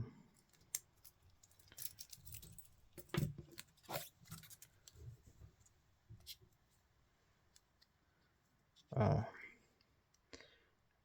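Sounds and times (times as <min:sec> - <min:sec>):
wristwatch clicks and rustles: 0:00.4 - 0:05.0.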